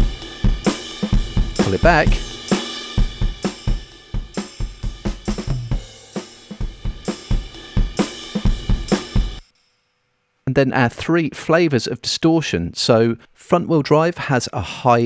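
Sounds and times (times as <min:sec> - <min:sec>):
drum kit groove: 0:00.0 - 0:09.4.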